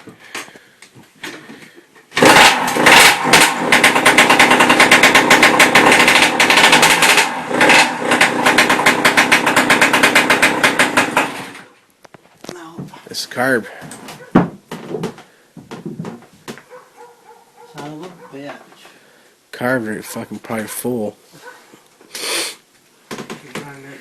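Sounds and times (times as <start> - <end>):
two-stroke motorcycle engine popping: 2.1 - 11.8.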